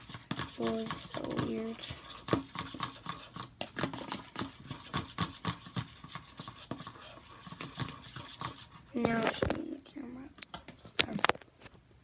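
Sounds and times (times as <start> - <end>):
utensil scraping in a bowl: 0.0 - 9.9.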